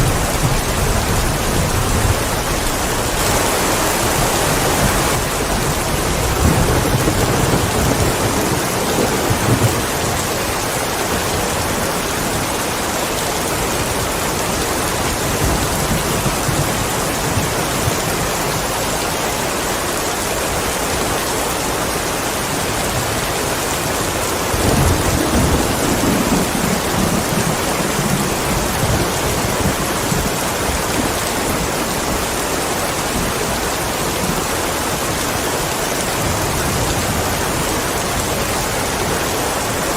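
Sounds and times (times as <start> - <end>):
thunder rumbling: 0.0 - 18.7, 24.0 - 32.4
steady rain: 0.0 - 39.9.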